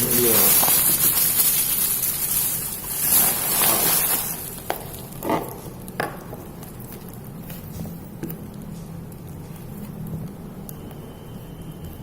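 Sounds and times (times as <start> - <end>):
packaging rustling and crinkling: 0.0 - 5.8.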